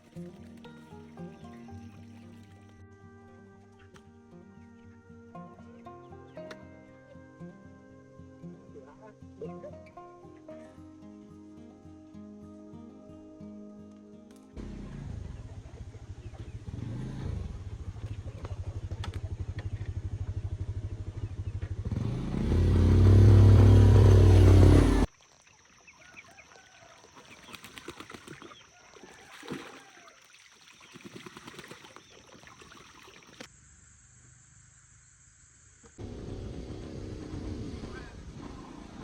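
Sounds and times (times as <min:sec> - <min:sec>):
small engine running and revving: 0:14.6 - 0:25.1, 0:36.0 - 0:39.0
faint bird calls: 0:22.9 - 0:33.4.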